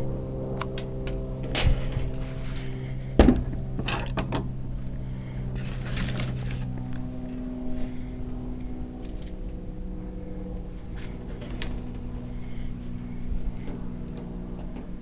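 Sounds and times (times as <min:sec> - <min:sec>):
steady machine hum: 0:00.0 - 0:15.0
sharp knocks and clatters: 0:01.4 - 0:02.2, 0:03.2 - 0:04.5.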